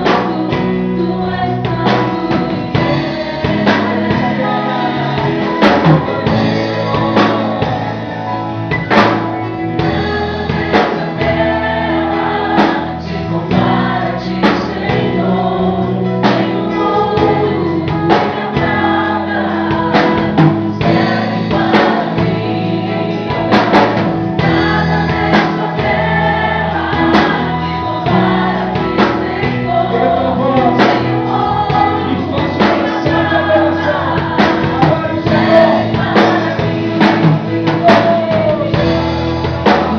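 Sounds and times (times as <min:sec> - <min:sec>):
band with percussion and bass: 0:00.0 - 0:39.9
voices singing together: 0:00.0 - 0:39.9.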